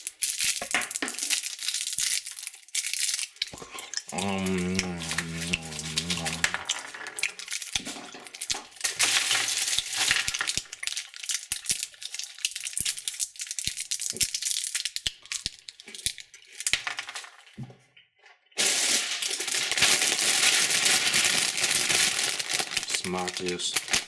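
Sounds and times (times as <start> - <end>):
plastic wrappers crinkling: 0.0 - 17.6, 18.6 - 24.0
sweets clicking together: 2.2 - 9.0, 9.6 - 17.2, 21.1 - 24.0.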